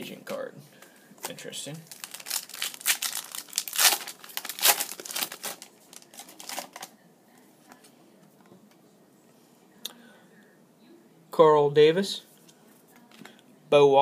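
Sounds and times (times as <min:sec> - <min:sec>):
wrapper tearing and crinkling: 0:01.2 - 0:06.9.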